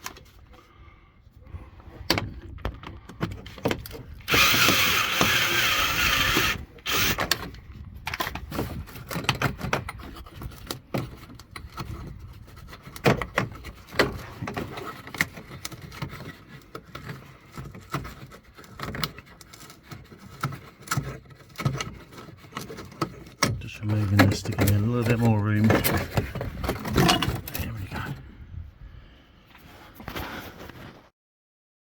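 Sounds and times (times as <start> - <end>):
hand tools clicking and knocking: 2.1 - 27.8
power drill running: 4.2 - 7.4.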